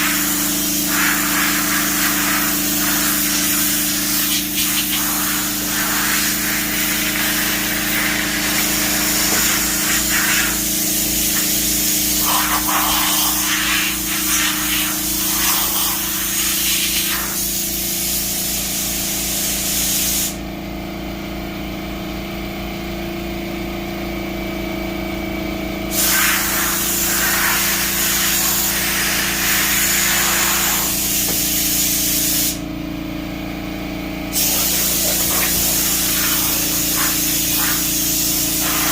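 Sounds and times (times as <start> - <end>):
steady low hum: 0.0 - 16.0
air blow gun hissing: 0.0 - 20.4, 25.9 - 32.7, 34.3 - 38.9.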